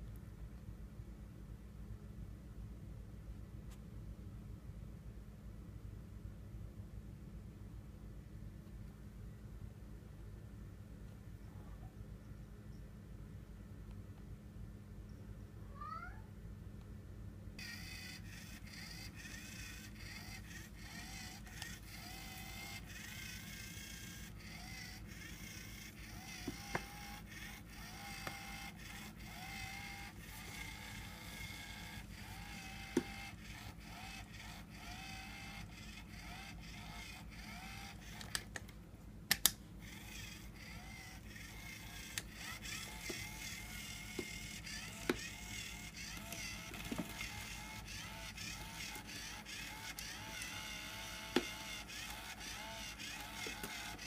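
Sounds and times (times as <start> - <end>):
low steady hum: 0.0 - 54.0
sharp clicks: 38.1 - 39.6.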